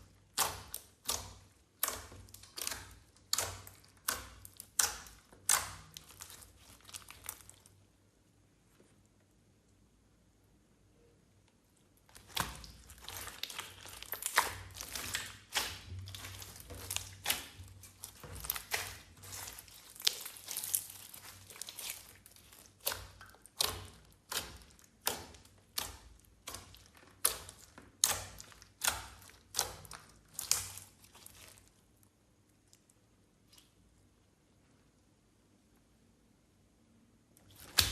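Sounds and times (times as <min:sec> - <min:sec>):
slime squelching and popping: 0:00.0 - 0:07.8, 0:11.9 - 0:33.8, 0:37.4 - 0:37.9.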